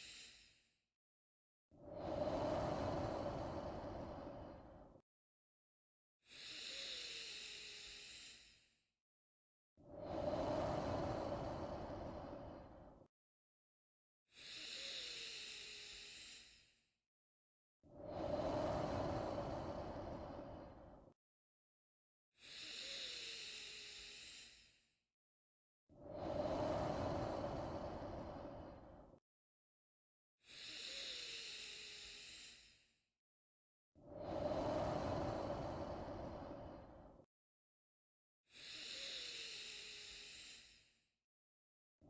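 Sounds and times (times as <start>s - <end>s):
person breathing slowly: 0.0s - 0.6s, 1.8s - 5.0s, 6.2s - 8.8s, 9.8s - 13.1s, 14.3s - 16.9s, 17.9s - 21.2s, 22.4s - 24.9s, 25.9s - 29.2s, 30.4s - 33.0s, 34.0s - 37.3s, 38.5s - 41.1s.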